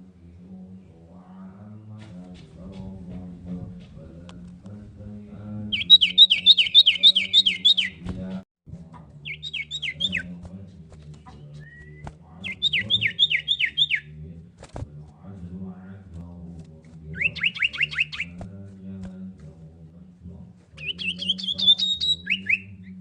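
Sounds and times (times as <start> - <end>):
bird singing high notes: 5.7 - 8.0, 9.2 - 10.3, 11.5 - 14.1, 17.2 - 18.4, 20.8 - 23.0.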